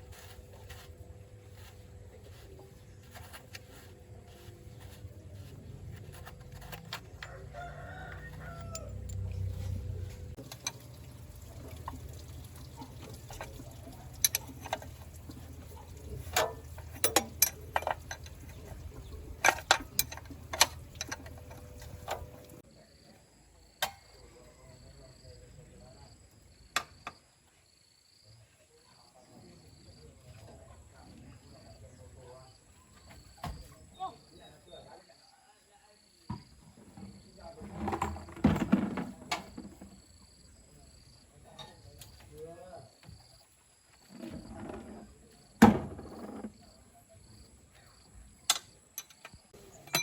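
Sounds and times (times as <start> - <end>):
rooster crowing: 7.2 - 9.7
low machine hum: 8.6 - 22.6.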